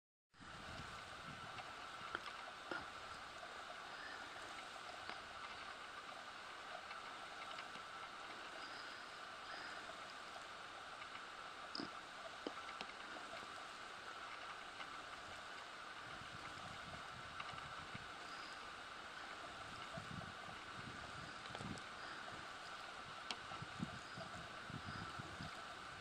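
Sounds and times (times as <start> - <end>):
outdoor background hiss: 0.4 - 26.0
soft clicks: 1.6 - 15.7.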